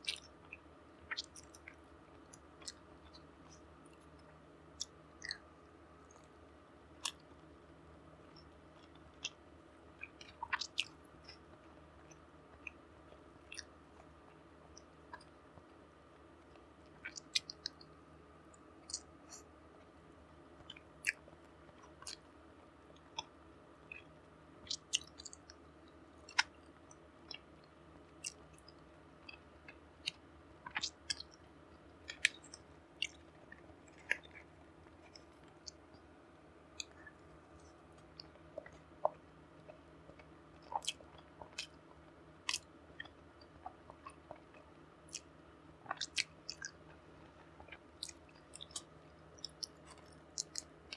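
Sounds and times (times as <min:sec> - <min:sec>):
person chewing food: 0:00.0 - 0:04.1, 0:10.0 - 0:11.5, 0:12.1 - 0:14.2, 0:16.8 - 0:17.9, 0:20.6 - 0:22.4, 0:23.0 - 0:25.6, 0:26.3 - 0:26.7, 0:28.2 - 0:36.0, 0:36.8 - 0:50.9
faint steady hum: 0:00.0 - 0:50.9.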